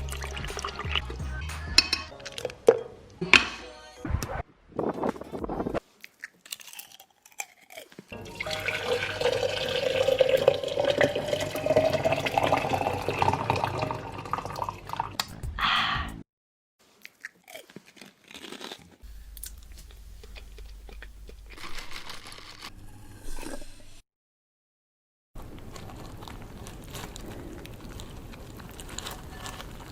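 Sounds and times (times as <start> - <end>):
crunching and chewing food: 5.8 - 8.2, 16.8 - 22.8, 25.4 - 29.9.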